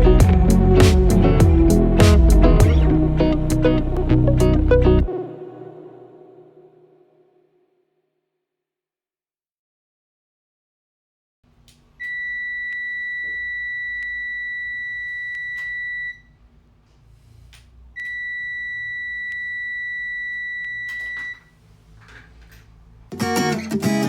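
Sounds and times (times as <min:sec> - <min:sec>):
continuity tester beeping: 0:12.0 - 0:16.3, 0:18.0 - 0:21.5.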